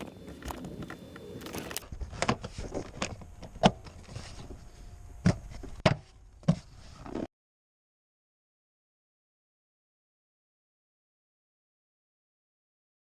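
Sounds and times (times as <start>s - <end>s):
hands handling power wire: 0.0s - 4.5s.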